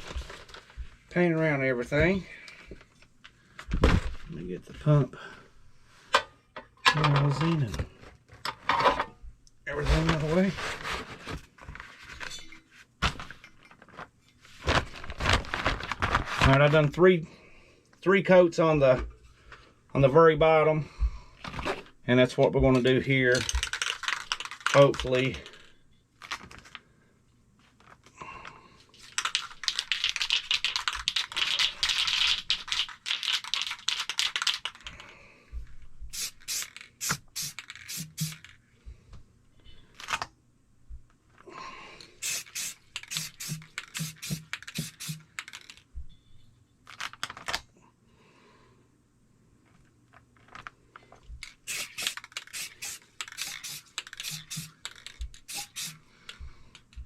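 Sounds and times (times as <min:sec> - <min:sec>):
spray can clicks and spurts: 0:36.1 - 0:38.5, 0:42.2 - 0:45.8, 0:51.6 - 0:56.4
spray paint can hissing: 0:36.1 - 0:38.5, 0:42.2 - 0:45.3, 0:51.6 - 0:56.0.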